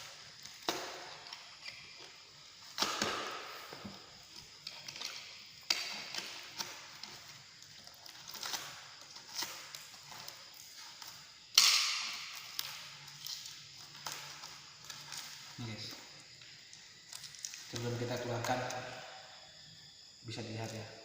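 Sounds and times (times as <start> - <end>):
small clicks and rustling: 4.2 - 18.9
packaging ripping and crackling: 4.4 - 15.6.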